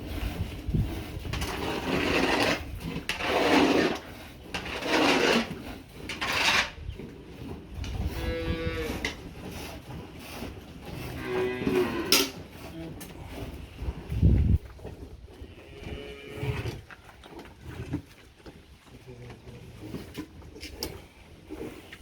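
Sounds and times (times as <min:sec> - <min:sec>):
cattle rasping noises: 0:00.0 - 0:22.0
cow mooing: 0:08.1 - 0:09.2, 0:11.2 - 0:12.3, 0:15.5 - 0:16.8.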